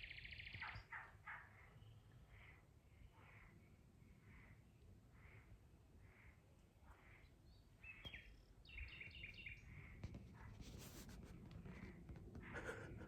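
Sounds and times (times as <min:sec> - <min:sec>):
faint bird chirps: 0:00.0 - 0:10.0.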